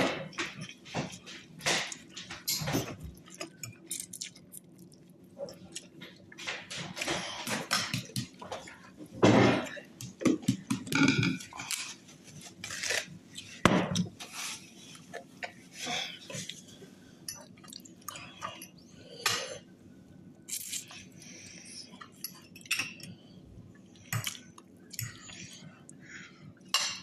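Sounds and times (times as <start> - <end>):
utensils clinking on plate: 0.0 - 4.1, 10.8 - 12.0, 22.0 - 23.1.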